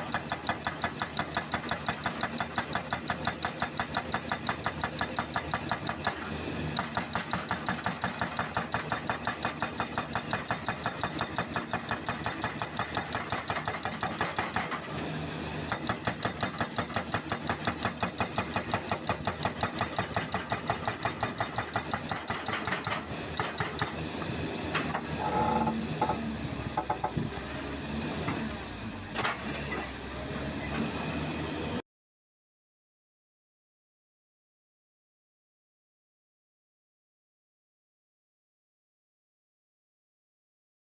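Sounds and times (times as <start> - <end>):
hydraulic breaker hammering concrete: 0.0 - 15.0, 15.6 - 24.0, 24.8 - 27.3
excavator engine: 0.0 - 31.8.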